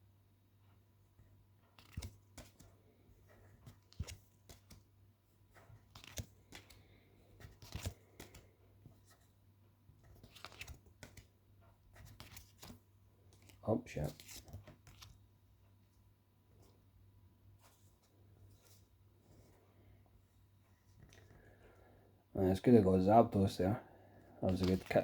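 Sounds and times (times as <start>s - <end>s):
cards rustling and clicking: 1.6s - 9.3s, 9.9s - 15.2s, 24.4s - 25.0s.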